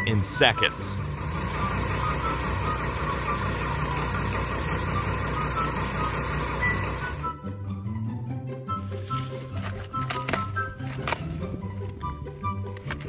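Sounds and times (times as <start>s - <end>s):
paint sprayer motor humming: 0.0s - 7.3s.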